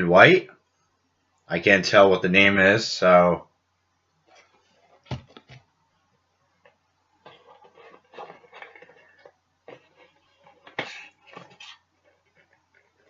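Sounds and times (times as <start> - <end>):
rustling: 4.2 - 5.7, 6.6 - 13.0.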